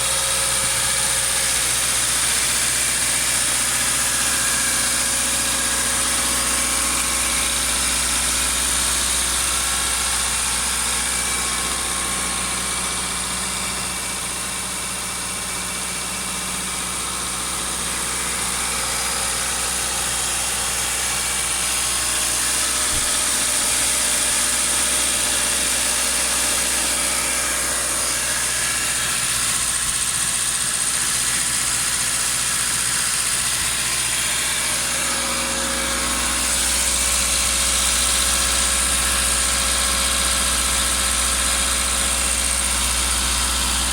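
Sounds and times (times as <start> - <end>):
car engine idling: 0.0 - 43.9.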